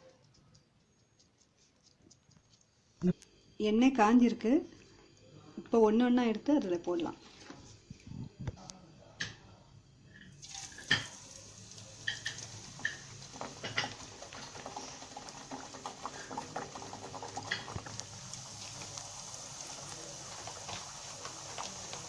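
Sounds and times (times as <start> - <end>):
dough frying in hot oil: 10.1 - 22.0.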